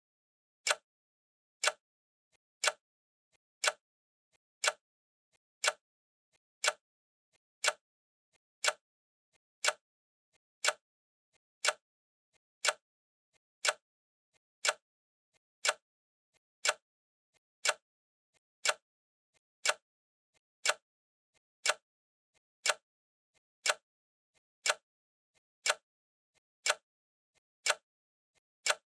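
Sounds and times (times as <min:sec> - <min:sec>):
clock ticking: 0:00.6 - 0:00.8, 0:06.6 - 0:06.8, 0:07.6 - 0:07.8, 0:08.6 - 0:08.8, 0:09.6 - 0:09.8, 0:10.6 - 0:10.8, 0:11.6 - 0:11.8, 0:12.6 - 0:12.8, 0:13.6 - 0:13.8, 0:14.6 - 0:14.8, 0:15.6 - 0:15.8, 0:16.6 - 0:16.8, 0:17.6 - 0:17.8, 0:18.6 - 0:18.8, 0:19.6 - 0:19.8, 0:20.6 - 0:20.8, 0:21.6 - 0:21.8, 0:22.6 - 0:22.8, 0:23.6 - 0:23.8, 0:24.6 - 0:24.8, 0:25.6 - 0:25.8, 0:26.6 - 0:26.8, 0:27.6 - 0:27.8, 0:28.6 - 0:28.8.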